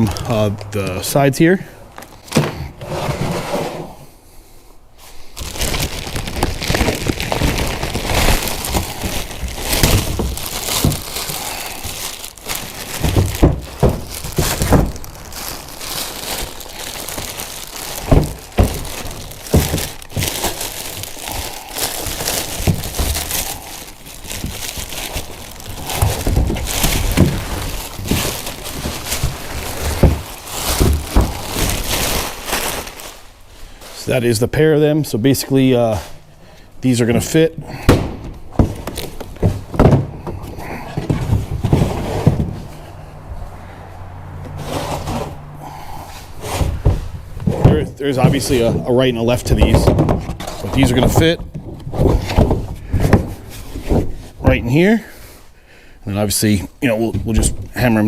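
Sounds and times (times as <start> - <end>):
packaging crinkling and rustling: 1.9 - 2.4, 5.0 - 34.0, 38.0 - 42.7, 46.1 - 55.0
knocks and thuds of box: 2.2 - 3.7, 6.2 - 15.4, 16.4 - 32.0, 37.7 - 42.8, 46.1 - 54.6.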